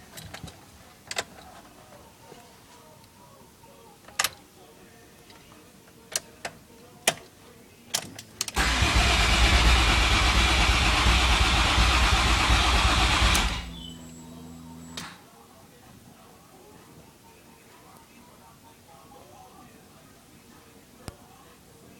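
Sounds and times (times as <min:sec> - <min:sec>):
car engine cranking: 0:08.5 - 0:15.1
quiet steady hum: 0:09.6 - 0:21.9
clicks: 0:13.2 - 0:15.2.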